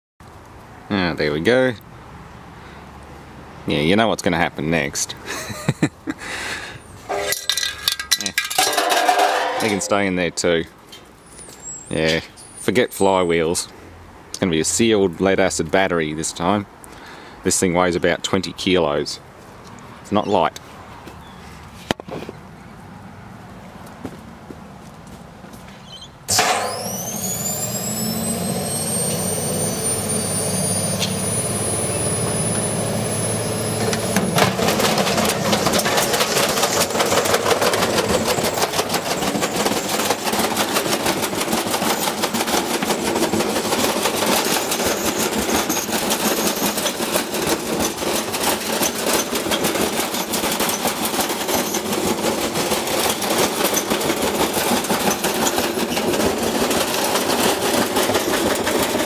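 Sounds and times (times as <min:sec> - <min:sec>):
drum banging and rattling: 0:07.1 - 0:10.4, 0:26.3 - 0:26.8, 0:33.8 - 0:59.0
loud bang: 0:08.6 - 0:10.3, 0:26.3 - 0:26.9
washing machine motor whine: 0:26.3 - 0:37.3.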